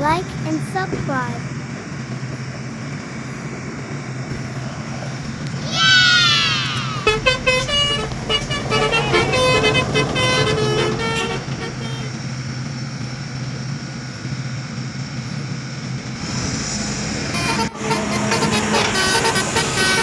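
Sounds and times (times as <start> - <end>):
diesel bus engine hum: 0.0 - 20.0
musical bus horn: 6.5 - 12.4, 17.2 - 20.0.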